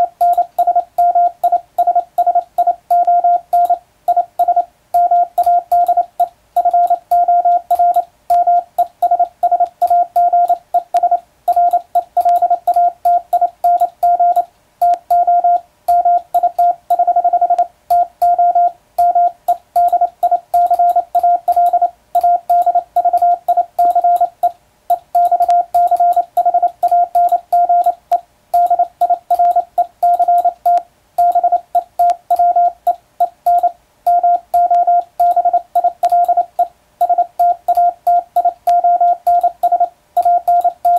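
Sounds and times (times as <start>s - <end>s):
morse code tone: 0.0s - 28.0s, 28.6s - 40.9s.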